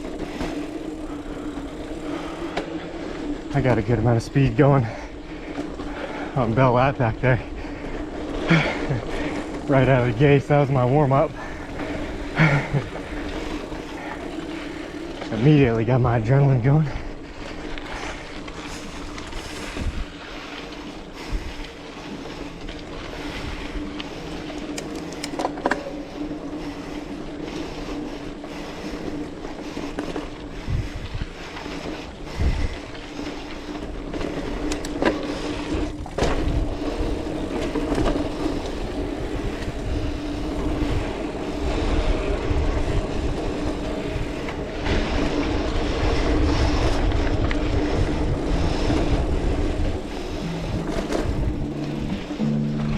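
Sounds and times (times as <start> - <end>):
bike chain and frame rattling: 0.0 - 6.3, 7.2 - 50.4
bike tyres rolling on dirt: 0.0 - 52.4
wind rumbling on microphone: 17.1 - 52.4.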